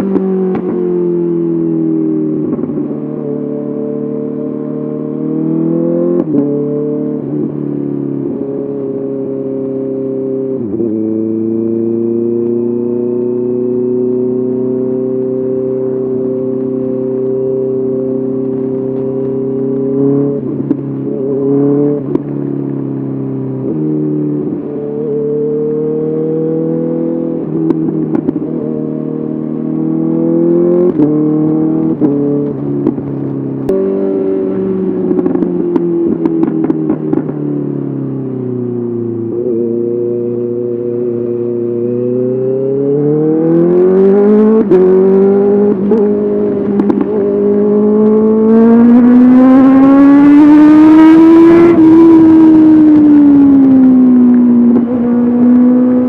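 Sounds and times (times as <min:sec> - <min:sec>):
motorcycle engine revving: 0:00.0 - 0:56.0.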